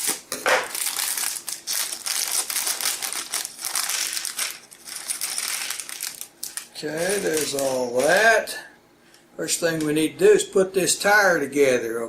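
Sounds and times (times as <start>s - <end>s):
plastic bags crinkling: 0.0s - 8.3s.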